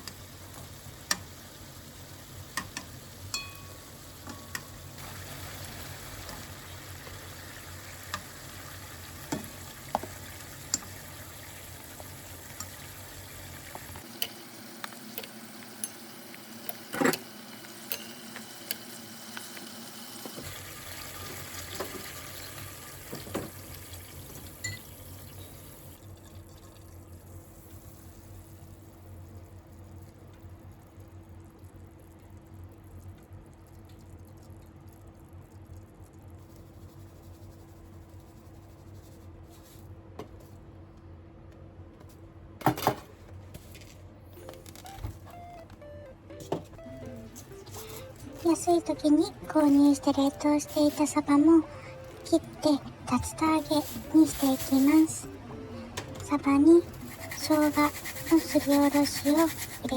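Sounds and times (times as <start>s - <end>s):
food sizzling while frying: 0.0s - 31.3s, 47.4s - 55.5s, 56.4s - 59.9s
utensils tapping cookware: 17.9s - 18.5s.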